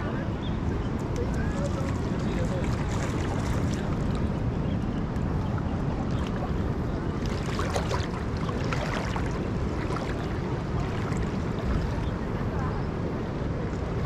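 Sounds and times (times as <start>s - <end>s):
moving sea water: 0.0s - 14.0s
wind buffeting microphone: 0.0s - 14.0s
light crackling splashes: 1.3s - 4.4s, 6.0s - 12.1s.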